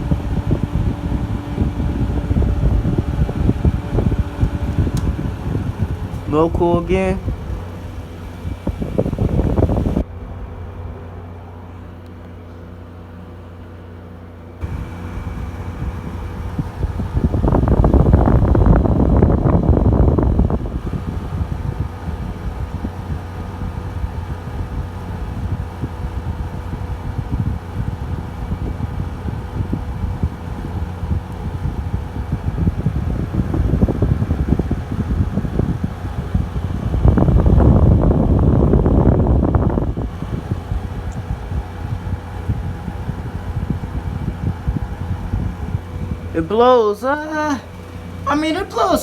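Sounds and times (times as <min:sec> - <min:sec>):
air conditioner fan hum: 0:00.0 - 0:49.0.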